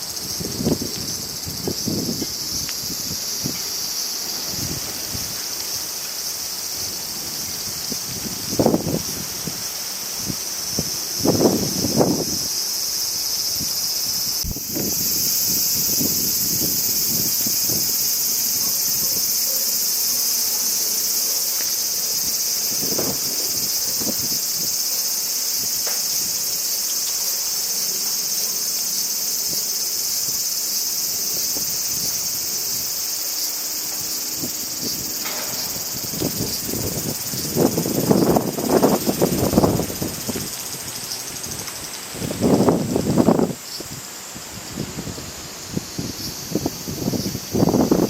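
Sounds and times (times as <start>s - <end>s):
wind buffeting microphone: 0.0s - 5.5s, 6.7s - 12.5s, 13.4s - 19.4s, 22.2s - 24.8s, 34.0s - 48.0s
insects trilling: 0.0s - 48.0s.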